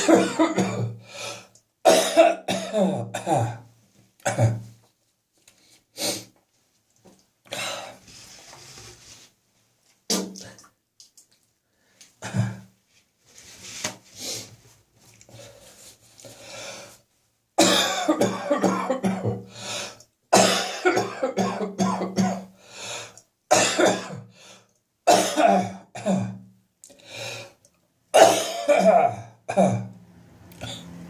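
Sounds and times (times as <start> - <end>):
person clearing throat: 0.0 - 1.0, 1.9 - 3.6, 4.2 - 4.7, 12.2 - 12.7, 17.6 - 19.5, 20.4 - 22.5, 25.1 - 26.4, 28.2 - 29.9
person coughing: 0.0 - 1.0, 1.9 - 3.6, 4.2 - 4.7, 12.2 - 12.7, 17.6 - 19.5, 20.4 - 22.5, 23.5 - 24.3, 25.1 - 26.4, 28.2 - 29.9.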